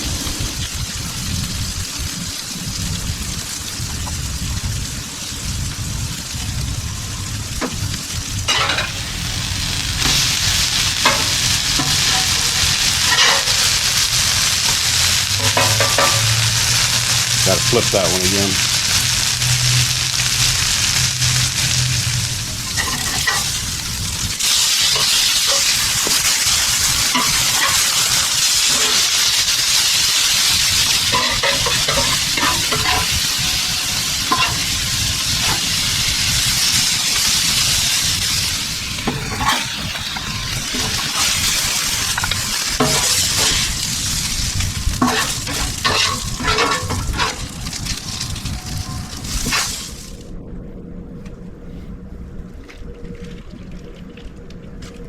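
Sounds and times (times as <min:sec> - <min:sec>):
fish sizzling on a griddle: 0:00.0 - 0:50.2
metal spatula scraping griddle: 0:08.5 - 0:37.7, 0:38.4 - 0:50.2.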